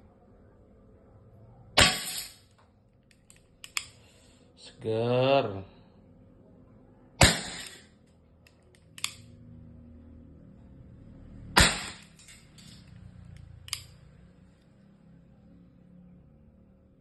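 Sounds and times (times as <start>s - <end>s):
airsoft revolver shots: 1.8s - 2.3s, 7.2s - 7.9s, 11.6s - 12.1s.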